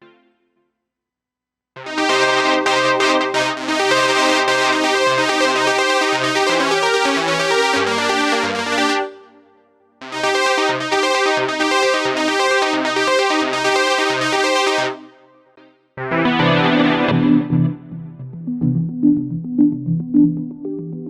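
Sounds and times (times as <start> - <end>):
synthesizer chord pattern: 1.8 - 21.0
synth bass line: 16.0 - 21.0.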